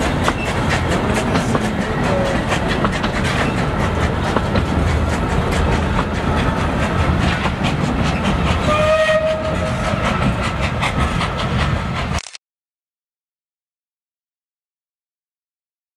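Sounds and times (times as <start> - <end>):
train rumbling along track: 0.0 - 12.2
train whistle blast: 8.7 - 9.8.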